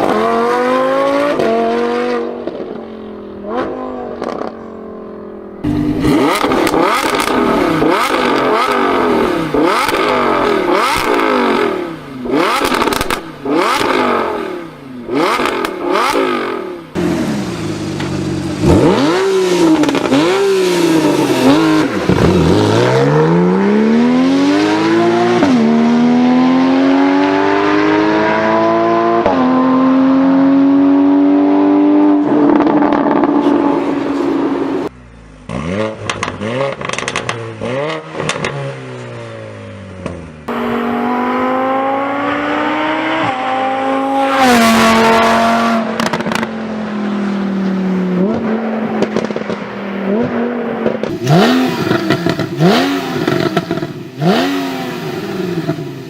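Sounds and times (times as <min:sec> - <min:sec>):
car engine revving: 0:00.0 - 0:56.0
exhaust crackling and popping: 0:05.6 - 0:11.6, 0:12.2 - 0:14.0, 0:35.5 - 0:38.6, 0:45.8 - 0:46.5, 0:48.3 - 0:54.4.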